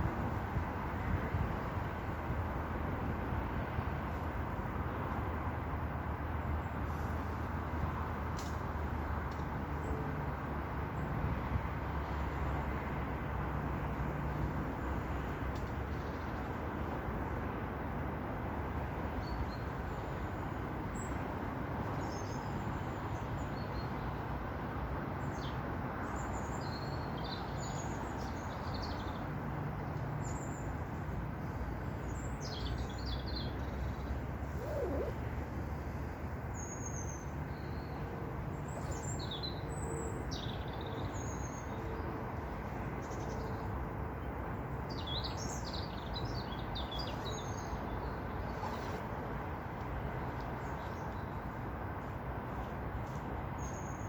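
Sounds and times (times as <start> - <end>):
small birds chirping: 32.2 - 35.2.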